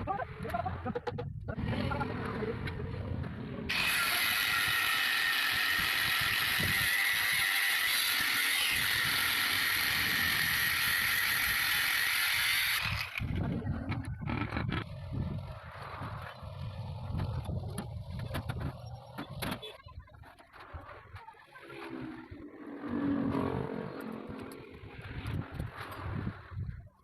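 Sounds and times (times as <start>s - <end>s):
high-pitched grinding hiss: 3.7s - 13.2s.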